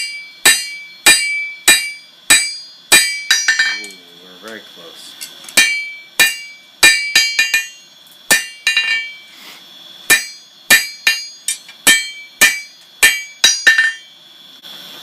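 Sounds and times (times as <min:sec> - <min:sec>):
hammer striking metal on anvil: 0:00.0 - 0:04.0, 0:05.5 - 0:09.3, 0:10.1 - 0:14.1.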